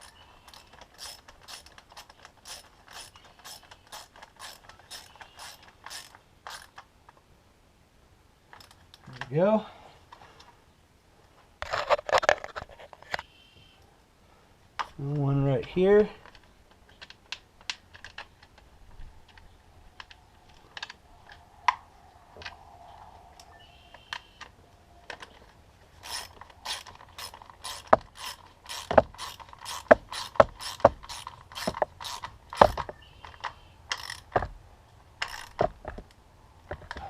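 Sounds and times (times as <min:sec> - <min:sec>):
socket ratchet clicking: 0:26.0 - 0:32.8, 0:33.9 - 0:34.4.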